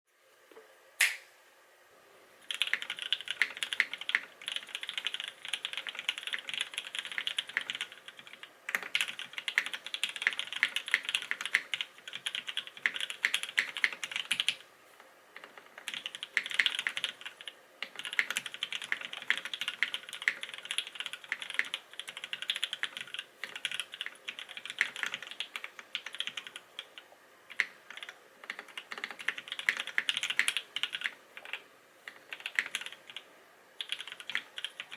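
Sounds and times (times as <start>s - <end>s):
sharp click: 1.0s - 1.3s
mechanical keyboard typing: 2.4s - 14.6s, 15.4s - 33.2s, 33.8s - 34.9s.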